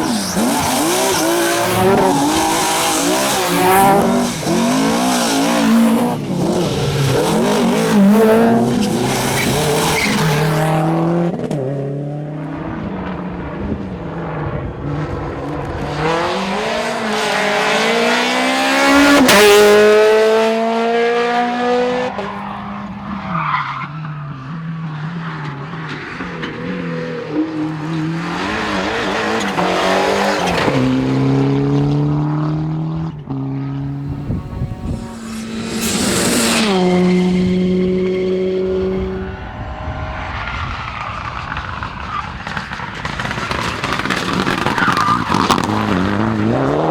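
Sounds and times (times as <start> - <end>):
tyre squeal: 0.0 - 10.7, 34.1 - 38.3, 42.0 - 46.0
car passing by: 0.0 - 11.2, 33.6 - 46.5
rally car engines revving: 0.0 - 46.9.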